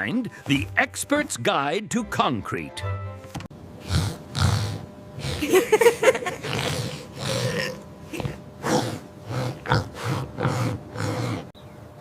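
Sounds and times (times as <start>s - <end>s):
cartoon pig snorting: 3.8s - 5.6s, 6.3s - 11.5s.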